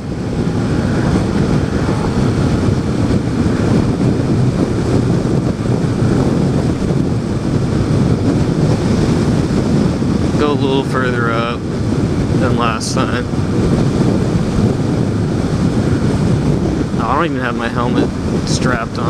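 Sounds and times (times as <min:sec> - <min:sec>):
motorcycle engine: 0:00.0 - 0:10.6
wind buffeting microphone: 0:00.0 - 0:19.0.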